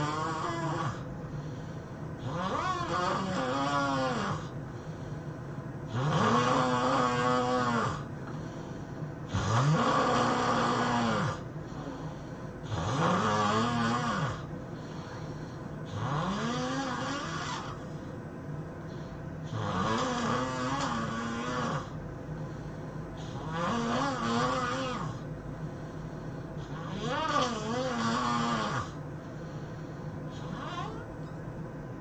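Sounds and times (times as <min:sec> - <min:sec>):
person snoring: 0:00.0 - 0:04.6, 0:05.9 - 0:18.0, 0:19.4 - 0:22.0, 0:23.2 - 0:25.3, 0:26.6 - 0:29.0, 0:29.6 - 0:31.1.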